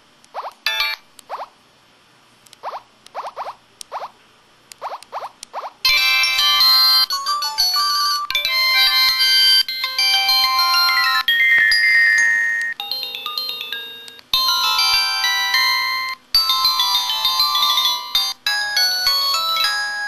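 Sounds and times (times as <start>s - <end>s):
phone ringtone melody: 0.7s - 1.0s, 5.8s - 20.0s.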